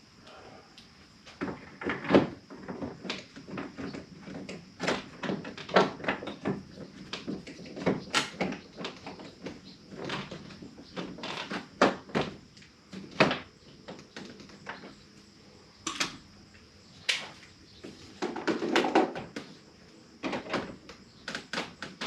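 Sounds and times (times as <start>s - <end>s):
knocks and clicks of hard parts: 1.3s - 15.0s, 15.8s - 16.2s.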